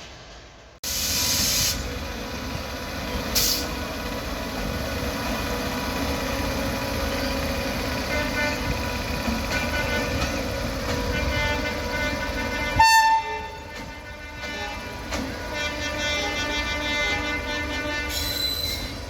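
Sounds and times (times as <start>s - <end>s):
electric locomotive rumbling: 0.0s - 19.0s
air hissing: 0.8s - 1.9s, 3.3s - 3.7s.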